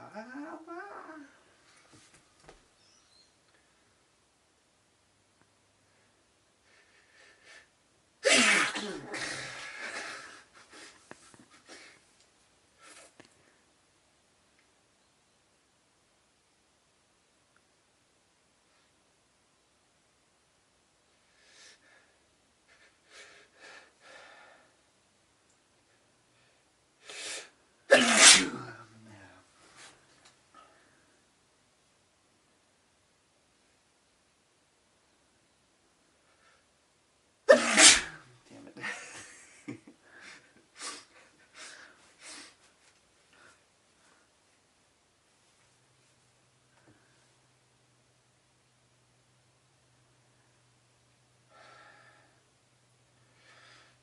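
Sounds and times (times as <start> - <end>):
person sneezing: 8.2 - 10.2, 27.1 - 28.9, 37.5 - 38.4
faint breaths catching: 21.1 - 24.9.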